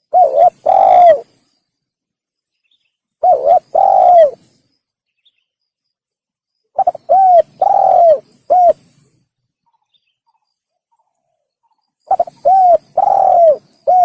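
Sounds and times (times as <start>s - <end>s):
dove cooing: 0.0s - 1.3s, 3.2s - 4.4s, 6.8s - 8.9s, 12.0s - 14.0s.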